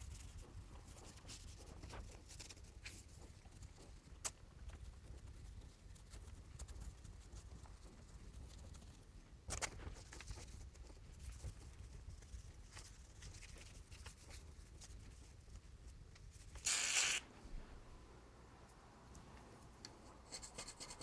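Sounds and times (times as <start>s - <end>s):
short hiss of spray: 16.6s - 17.3s.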